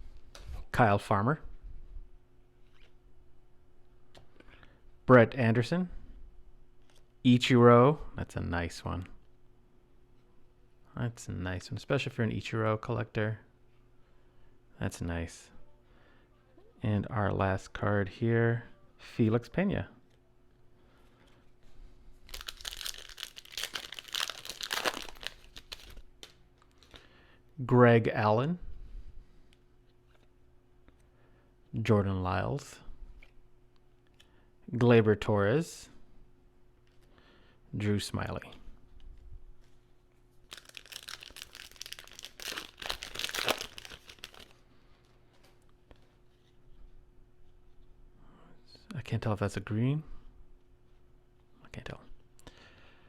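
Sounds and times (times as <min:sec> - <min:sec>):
foil wrapper crinkling and tearing: 0:22.3 - 0:27.0, 0:40.4 - 0:44.6.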